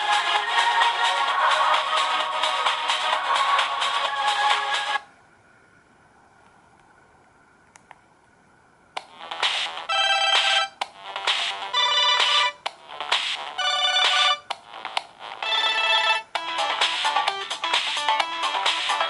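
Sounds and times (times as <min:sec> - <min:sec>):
mobile phone ringtone melody: 0:09.9 - 0:10.8, 0:11.6 - 0:12.6, 0:13.6 - 0:14.5, 0:15.2 - 0:18.7.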